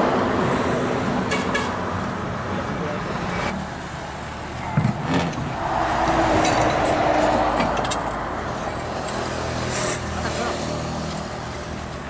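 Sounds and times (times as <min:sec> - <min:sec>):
vehicle passing by: 0:02.3 - 0:11.8.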